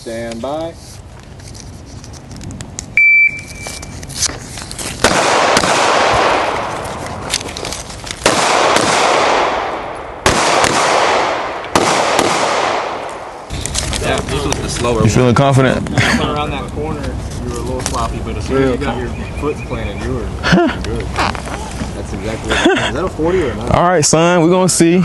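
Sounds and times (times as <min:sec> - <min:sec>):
shot timer beep: 0:03.0 - 0:03.9
faint gunshot cracks: 0:05.0 - 0:06.6, 0:08.2 - 0:13.2
loud gunshots: 0:05.0 - 0:06.8, 0:08.2 - 0:13.5.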